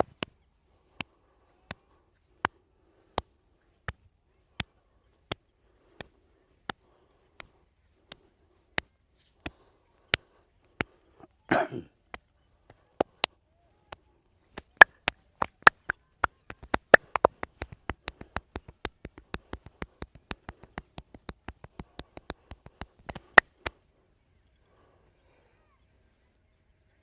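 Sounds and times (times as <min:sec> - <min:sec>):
throaty cough-like noise: 0:11.5 - 0:11.9
hands slapping skin: 0:14.6 - 0:23.8.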